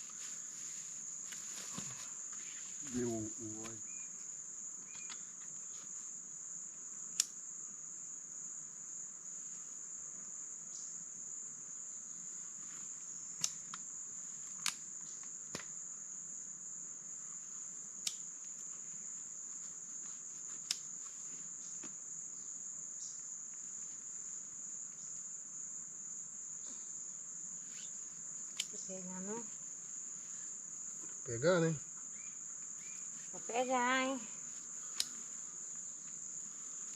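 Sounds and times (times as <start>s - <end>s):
shrill insect chorus: 0.0s - 36.9s
sharp clicks: 34.9s - 35.2s.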